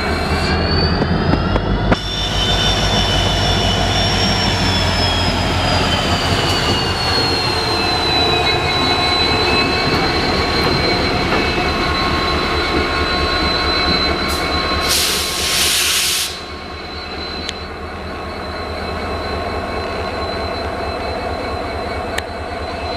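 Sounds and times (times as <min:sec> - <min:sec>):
high whine: 0:00.0 - 0:15.3
diesel locomotive humming: 0:00.0 - 0:22.9
loud air hiss: 0:14.8 - 0:16.5.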